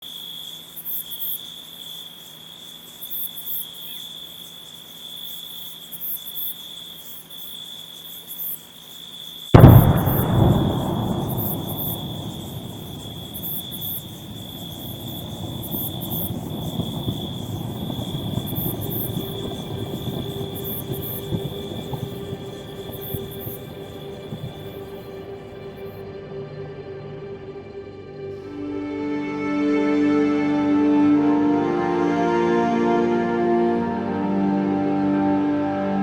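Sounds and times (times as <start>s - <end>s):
night insects chirping: 0.0s - 36.0s
volcanic explosion blast: 9.6s - 25.8s.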